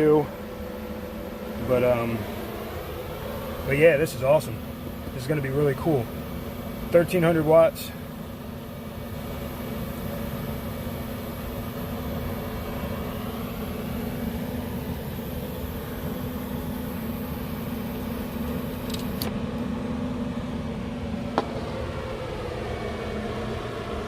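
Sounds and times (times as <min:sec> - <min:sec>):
faint high whine: 0:00.0 - 0:24.0
fan hum: 0:00.0 - 0:24.0
sharp click: 0:18.3 - 0:19.4
low drone: 0:20.8 - 0:24.0.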